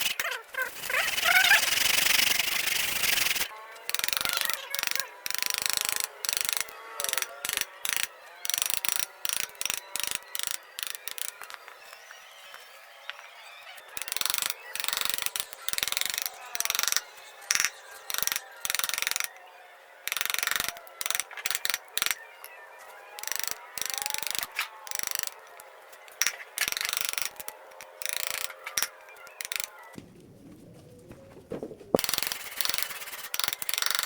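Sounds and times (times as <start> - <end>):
hand tool scraping wood: 31.6 - 34.0.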